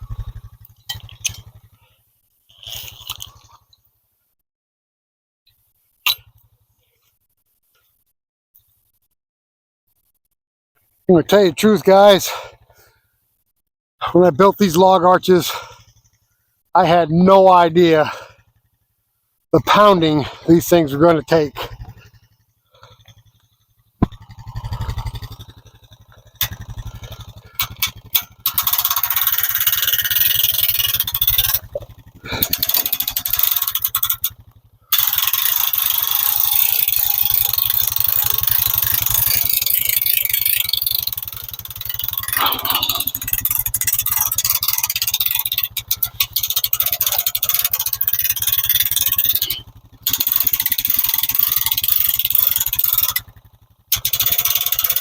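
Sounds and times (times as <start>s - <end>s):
steady low drone: 0.0s - 1.6s, 24.0s - 34.1s
four-wheeler engine running: 0.0s - 4.3s, 5.6s - 7.2s, 10.8s - 55.0s
scraping and rattling: 2.5s - 3.7s, 24.0s - 34.4s.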